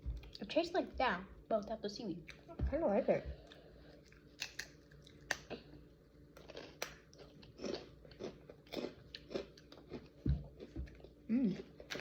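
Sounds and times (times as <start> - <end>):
person chewing crunchy cracker: 3.4 - 12.0.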